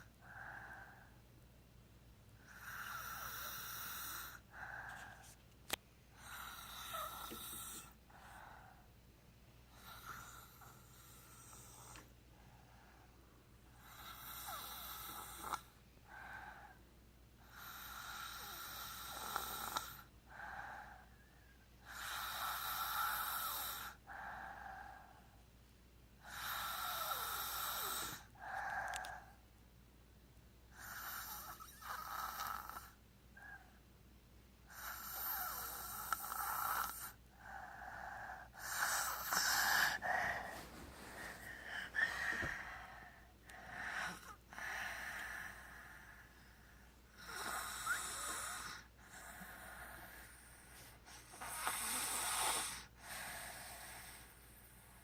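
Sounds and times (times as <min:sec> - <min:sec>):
person snoring: 0:06.2 - 0:08.0, 0:34.7 - 0:45.9, 0:47.2 - 0:50.3.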